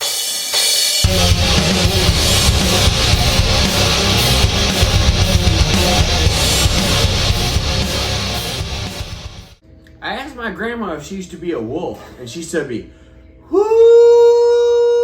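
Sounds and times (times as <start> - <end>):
drums: 0.0 - 9.6
distorted electric guitar rock: 1.0 - 9.6.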